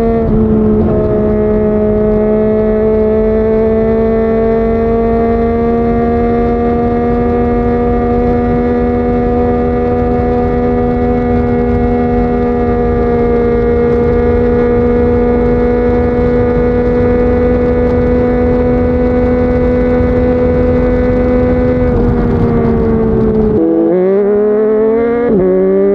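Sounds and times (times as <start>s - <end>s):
motorcycle engine cruising: 0.0s - 25.9s.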